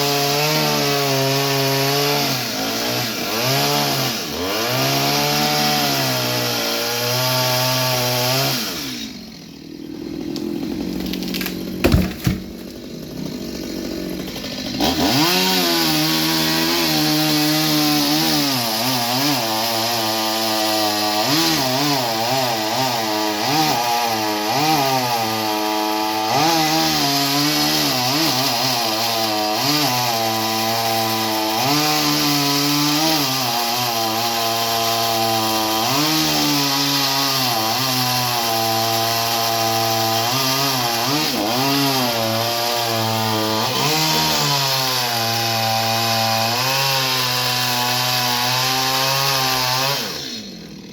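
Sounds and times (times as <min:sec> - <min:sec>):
chainsaw cutting wood: 0:00.0 - 0:50.9
sharp knocks: 0:11.3 - 0:12.8.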